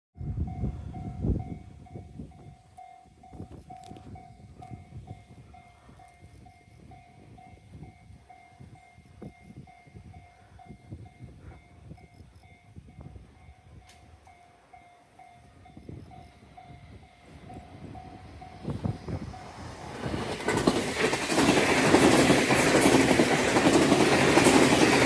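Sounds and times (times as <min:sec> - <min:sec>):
electric train passing: 0:00.2 - 0:25.0
wheels clattering over track: 0:19.8 - 0:25.0.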